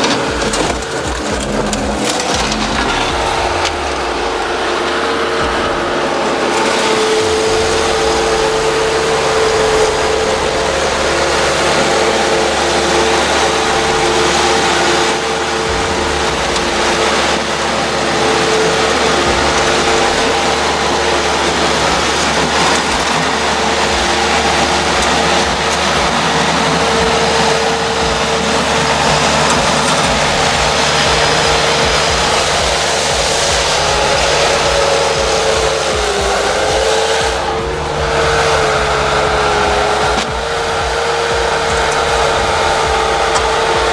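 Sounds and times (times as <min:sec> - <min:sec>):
diesel engine running: 0:00.0 - 0:43.9
machine scooping snow: 0:00.0 - 0:43.9
steady whine: 0:00.0 - 0:43.9.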